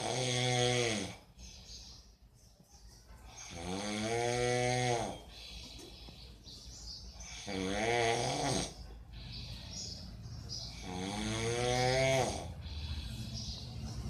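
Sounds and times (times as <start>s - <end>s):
man snoring loudly: 0.0s - 1.3s, 3.4s - 5.3s, 7.3s - 8.8s, 10.7s - 13.1s
soft breathing: 12.4s - 14.0s.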